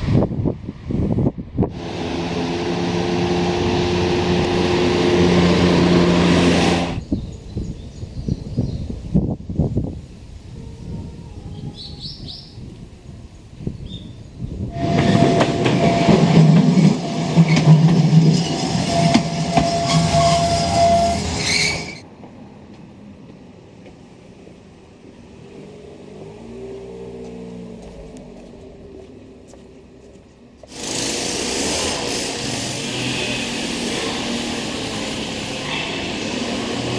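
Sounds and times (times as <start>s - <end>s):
loud passing vehicle: 1.7s - 7.0s, 14.7s - 21.9s.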